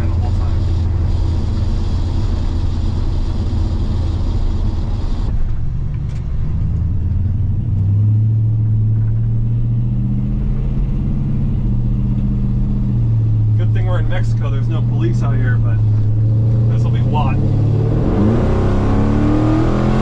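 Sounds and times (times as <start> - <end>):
truck engine running: 0.0 - 19.2.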